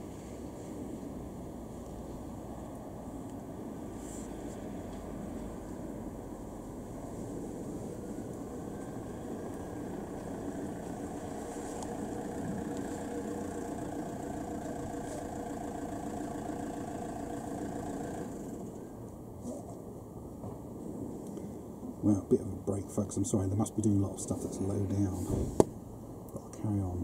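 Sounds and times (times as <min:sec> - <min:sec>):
vehicle engine idling hum: 0:00.0 - 0:27.0.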